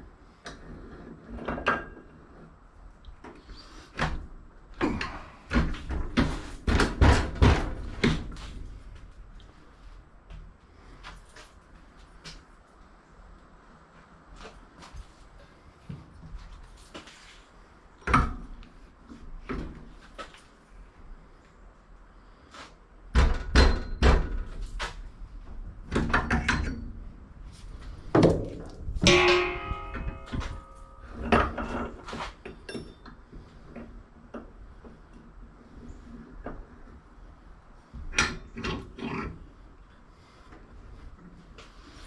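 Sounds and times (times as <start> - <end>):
scrap metal knocks and clanks: 27.9 - 33.2
ringing metallic clang: 29.0 - 31.2.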